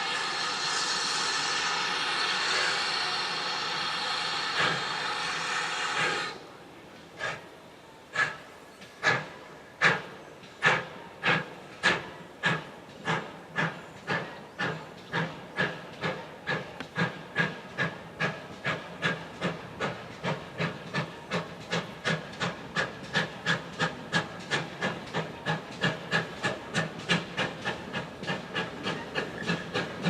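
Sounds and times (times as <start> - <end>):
steam hissing: 0.0 - 30.0
steam locomotive chuffing: 0.0 - 30.0.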